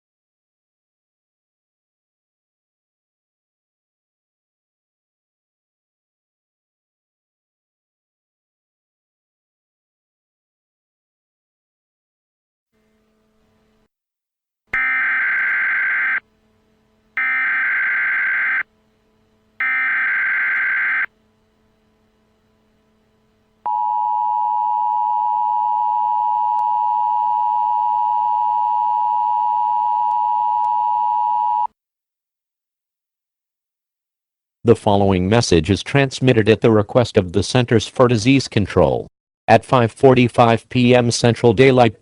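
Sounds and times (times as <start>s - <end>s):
shrill two-tone attention signal: 14.8s - 16.2s, 17.2s - 18.6s, 19.6s - 21.1s
warbling data tones: 14.8s - 16.2s, 17.2s - 18.6s, 19.6s - 21.1s.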